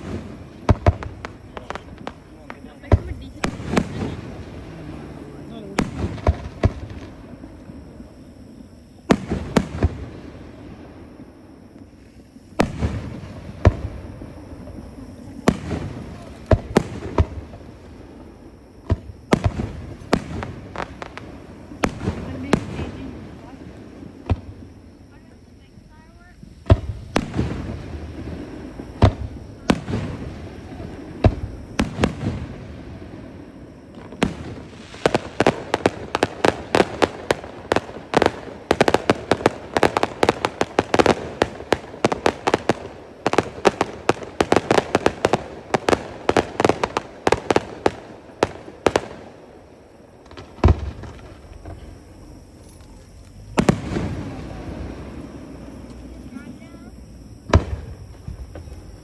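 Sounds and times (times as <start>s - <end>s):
rapid crackling firework pops: 0.0s - 8.1s, 9.0s - 56.4s, 57.1s - 59.0s
rumbling firework burst: 0.0s - 52.6s, 53.3s - 59.0s
firework booms: 0.0s - 59.0s
loud firework bang: 2.8s - 7.4s, 26.6s - 49.2s, 50.2s - 52.2s, 53.5s - 55.8s, 57.4s - 59.0s.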